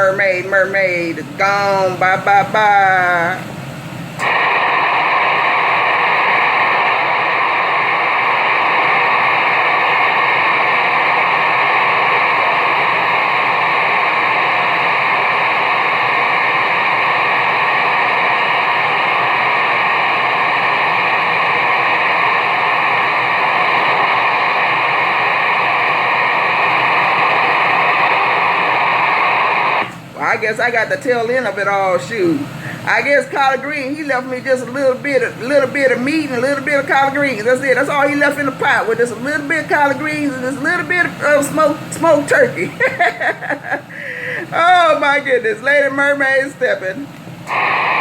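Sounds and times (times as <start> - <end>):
radio static hiss: 4.2 - 48.0.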